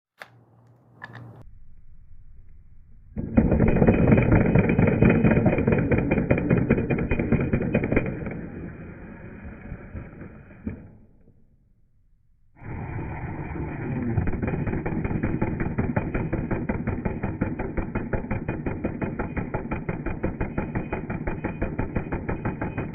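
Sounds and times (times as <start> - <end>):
sharp click: 0.2 - 1.4
impact driver rattling: 3.2 - 11.3, 14.1 - 22.9.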